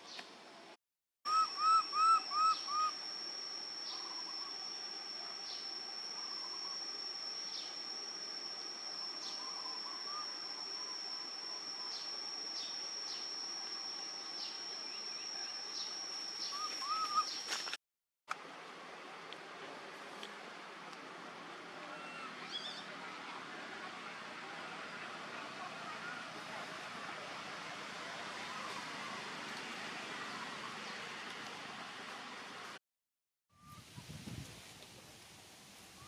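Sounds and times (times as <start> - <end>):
whistled bird notes: 1.3 - 3.0, 14.4 - 17.5
high-pitched insect drone: 1.3 - 17.8.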